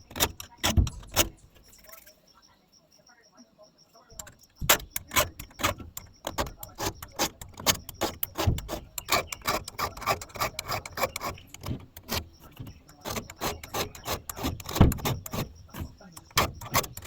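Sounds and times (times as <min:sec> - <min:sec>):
file rasping on chainsaw chain: 0:00.0 - 0:01.7, 0:04.2 - 0:17.0.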